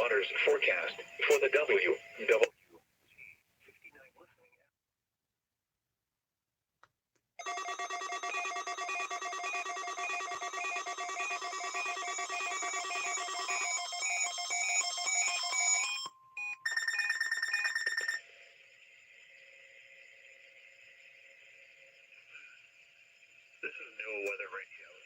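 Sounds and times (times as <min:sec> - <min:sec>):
electronic signal tones stepping: 0:07.4 - 0:15.8
faint steady tone: 0:18.3 - 0:25.0.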